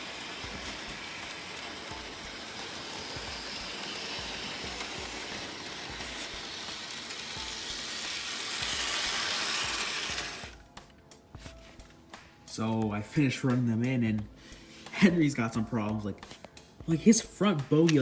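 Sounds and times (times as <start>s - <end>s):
model train motors whirring: 0.0s - 10.6s, 17.7s - 18.0s
wheels ticking on rails: 0.0s - 10.6s.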